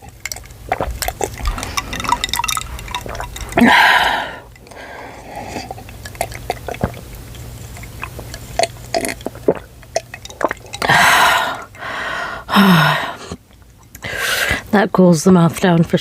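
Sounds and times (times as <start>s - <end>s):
wet mouth clicks and smacks: 0.0s - 3.6s, 5.6s - 10.9s.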